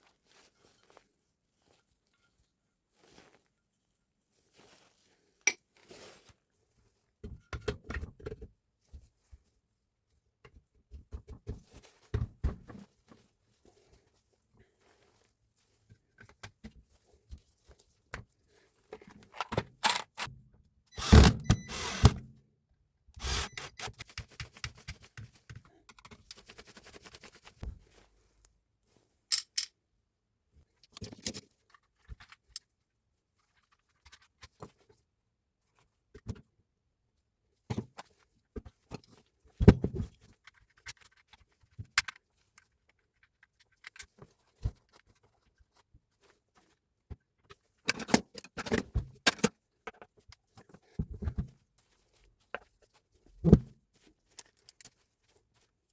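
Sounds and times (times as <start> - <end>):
metal parts clattering: 19.0 - 20.3
metal tools clinking and scraping: 19.0 - 20.3.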